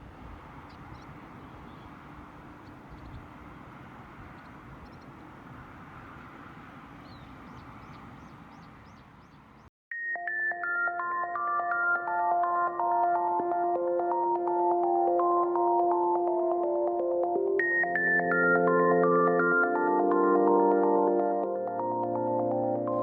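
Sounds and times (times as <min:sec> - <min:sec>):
small birds chirping: 0:00.1 - 0:09.7
electronic synthesizer music: 0:09.9 - 0:23.0.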